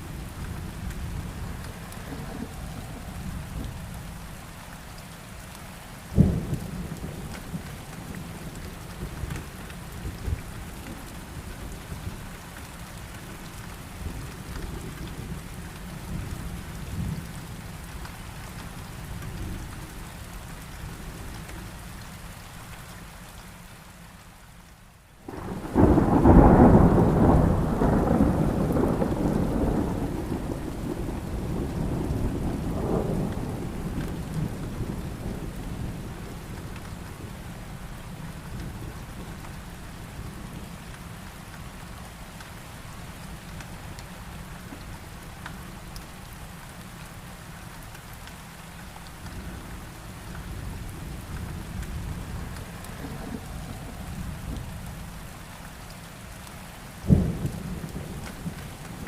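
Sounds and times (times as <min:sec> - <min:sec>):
heavy rainfall: 0:00.0 - 0:59.0
thunderclap and rumble: 0:00.2 - 0:04.4, 0:06.1 - 0:12.4, 0:25.3 - 0:41.0, 0:49.1 - 0:55.4, 0:57.0 - 0:59.0.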